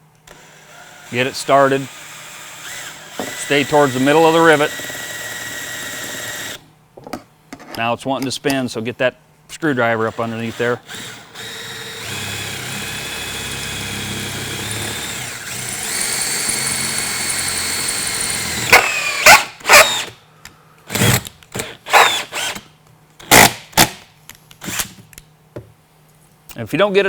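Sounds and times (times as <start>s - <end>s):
drill short bursts: 0.3s - 6.6s, 9.5s - 20.2s, 20.9s - 22.6s
electric drill whining: 0.3s - 6.6s, 9.8s - 20.2s, 20.9s - 22.6s.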